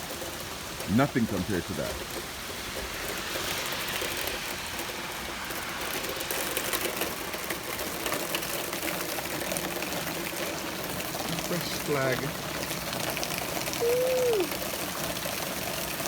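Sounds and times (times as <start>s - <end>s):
rain falling: 0.0s - 16.0s
raindrops ticking on a surface: 0.0s - 16.0s.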